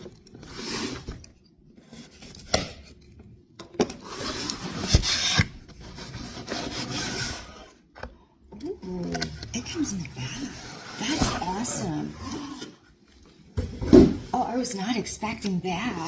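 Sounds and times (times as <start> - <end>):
packaging rubbing and scraping: 0.0 - 3.0, 3.9 - 7.8.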